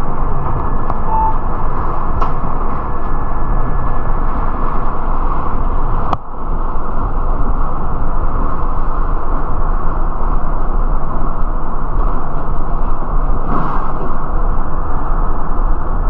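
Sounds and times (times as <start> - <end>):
bus engine and road noise: 0.0 - 16.0
short beep: 1.0 - 1.5.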